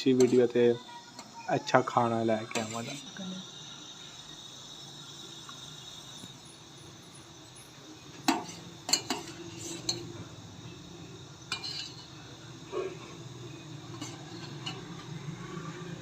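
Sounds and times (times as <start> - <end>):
stove and boiling liquid: 0.0 - 16.0
metal spoon clinking on pot: 8.3 - 10.1, 11.5 - 12.1, 13.9 - 15.1.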